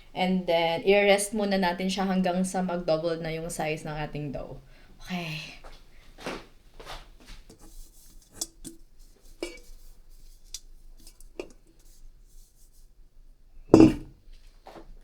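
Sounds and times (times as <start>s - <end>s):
bowl and utensils clinking: 9.4s - 9.8s, 13.8s - 14.1s.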